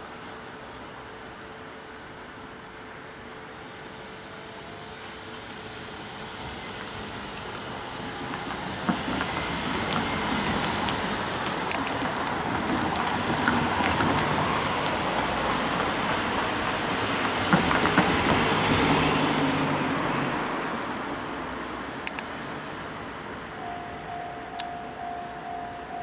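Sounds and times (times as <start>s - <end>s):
electric train passing: 0.0s - 26.0s
wheel clacks over rail joints: 6.8s - 18.8s.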